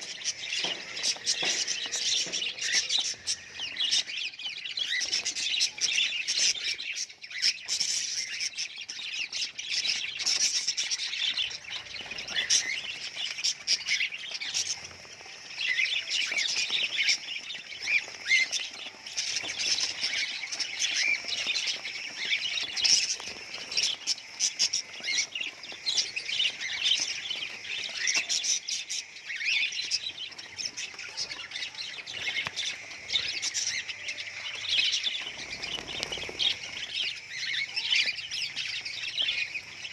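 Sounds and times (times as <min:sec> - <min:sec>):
budgerigars chirping: 0:30.9 - 0:39.9.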